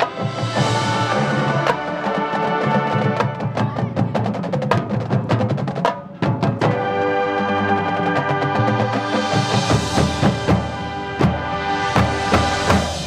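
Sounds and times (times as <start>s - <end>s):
band playing wind chords: 0.0s - 4.2s, 6.5s - 13.0s
sharp percussion hits: 6.5s - 13.0s.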